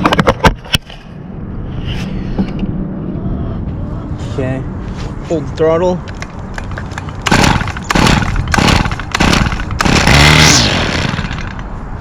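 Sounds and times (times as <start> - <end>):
recoil starter pulls: 7.2 - 11.7
small engine firing briefly: 7.3 - 11.6.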